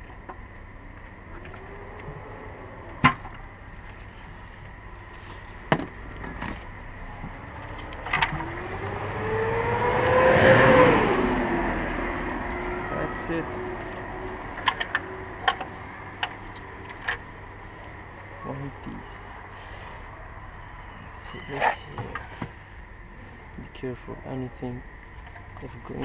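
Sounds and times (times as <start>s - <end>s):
passing motor vehicle: 6.4s - 18.5s.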